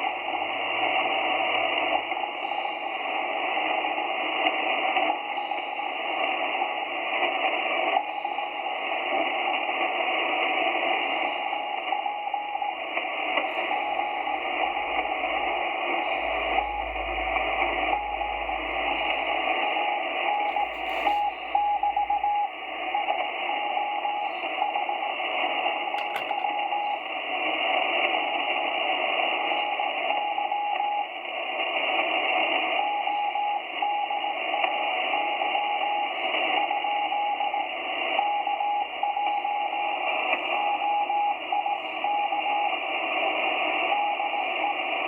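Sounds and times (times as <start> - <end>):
receiver hiss: 0.0 - 45.0
morse code tone: 11.7 - 27.4.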